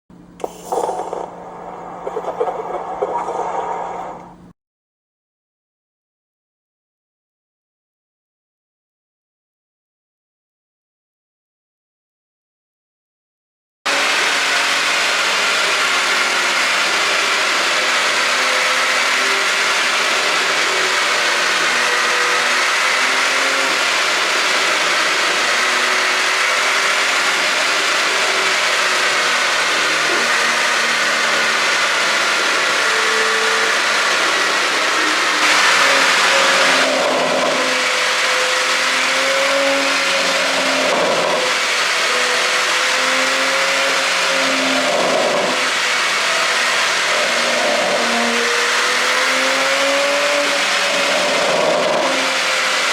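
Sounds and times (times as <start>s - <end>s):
car engine revving: 13.9s - 52.9s.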